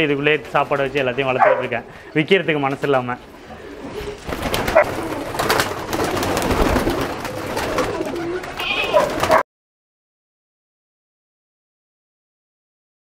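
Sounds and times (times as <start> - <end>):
wing flutters: 3.8 - 9.4.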